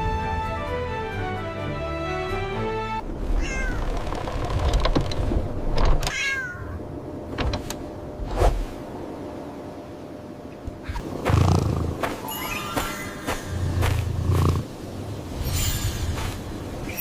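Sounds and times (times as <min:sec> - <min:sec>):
background music: 0:00.0 - 0:03.0
cat meowing: 0:03.4 - 0:03.8, 0:06.1 - 0:06.8.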